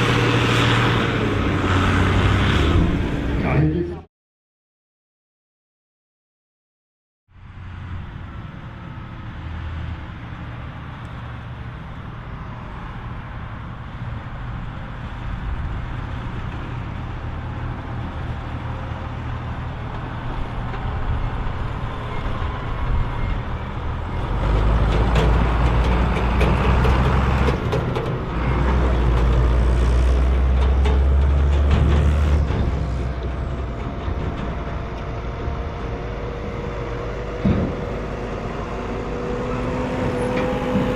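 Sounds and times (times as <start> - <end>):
tractor diesel engine running: 14.0 - 40.9.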